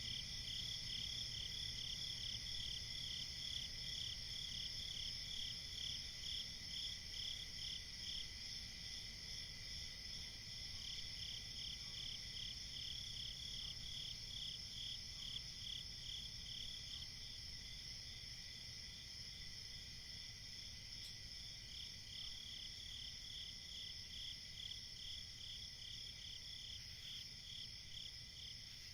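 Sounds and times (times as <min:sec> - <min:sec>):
crickets chirping chorus: 0:00.0 - 0:28.9
single cricket chirping rhythmically: 0:00.0 - 0:28.9.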